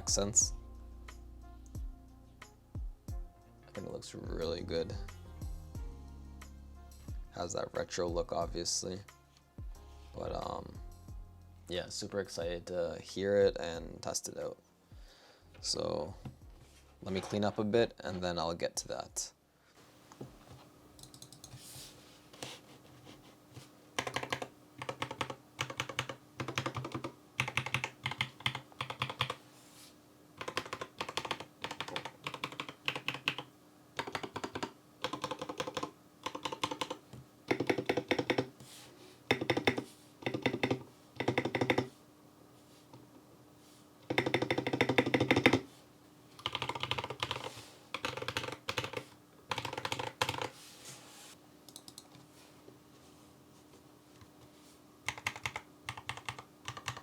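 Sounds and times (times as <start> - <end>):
rapid keyboard typing: 21.0 - 21.6, 24.0 - 29.4, 30.4 - 38.6, 39.3 - 42.0, 44.0 - 45.7, 46.4 - 50.6, 51.7 - 52.2, 55.1 - 57.0.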